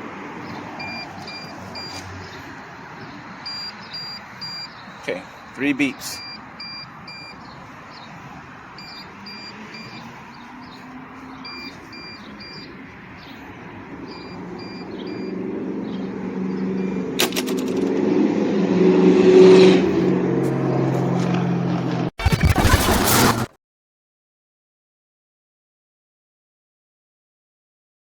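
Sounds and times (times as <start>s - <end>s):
mower warning beeps: 0.8s - 2.1s, 3.4s - 5.1s, 5.7s - 7.6s, 8.8s - 10.4s, 11.3s - 12.8s, 14.1s - 17.2s.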